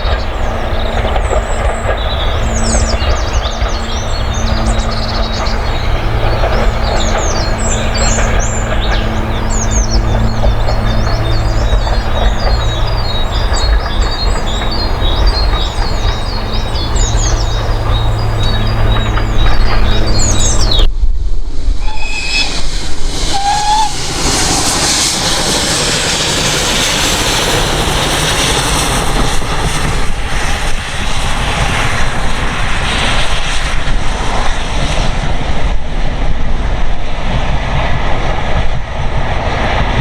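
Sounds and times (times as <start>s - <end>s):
birds chirping and singing: 0.0s - 20.9s
low hum: 0.0s - 29.3s
steam train rumbling past: 0.0s - 40.0s.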